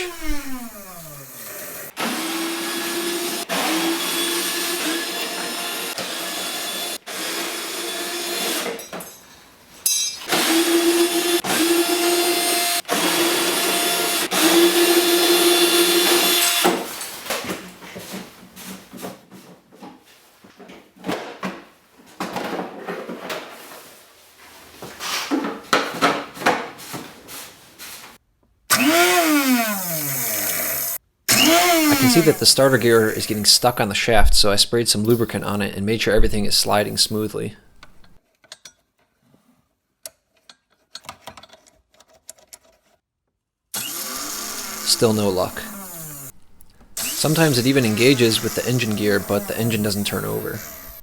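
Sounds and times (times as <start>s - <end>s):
electric starter motor whirring: 0.0s - 7.0s, 10.4s - 16.8s, 28.7s - 33.5s, 43.8s - 51.0s.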